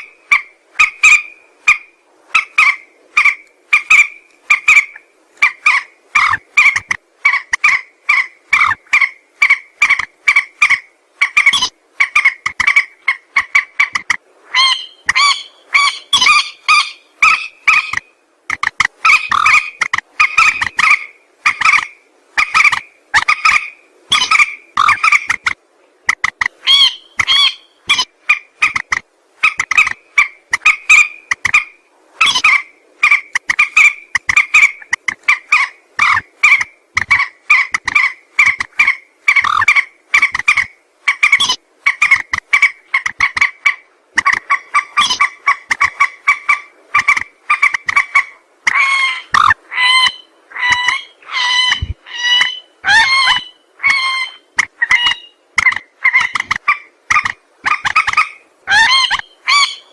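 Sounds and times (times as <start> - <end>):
rail bird calling short notes: 26.6 - 28.8, 29.4 - 59.8.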